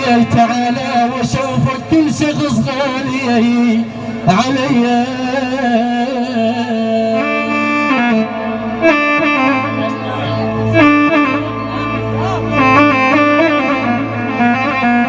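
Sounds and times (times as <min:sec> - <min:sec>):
reedy saxophone-like melody: 0:07.0 - 0:15.0
steady low drone: 0:08.3 - 0:14.3.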